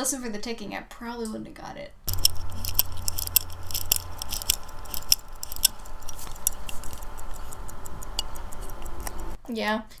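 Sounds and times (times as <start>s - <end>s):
pocket watch ticking: 2.1s - 9.4s.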